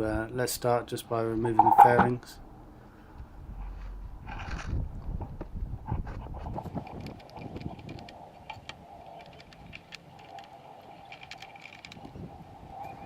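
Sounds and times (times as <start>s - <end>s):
steady hum: 1.4s - 2.6s.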